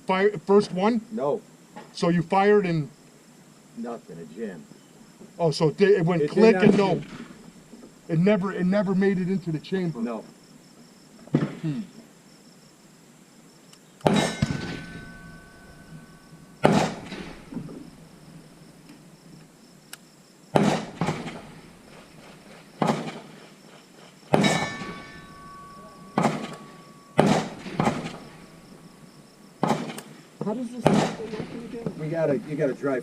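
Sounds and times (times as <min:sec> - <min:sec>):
gunshots with echo: 0:14.0 - 0:16.0, 0:16.6 - 0:17.9, 0:20.6 - 0:22.1, 0:24.3 - 0:28.8, 0:30.8 - 0:31.8
ringing tone: 0:14.2 - 0:16.6, 0:24.4 - 0:29.4.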